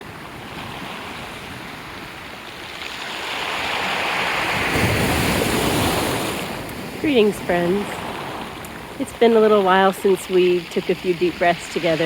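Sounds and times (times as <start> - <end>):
waves breaking: 0.0 - 12.0.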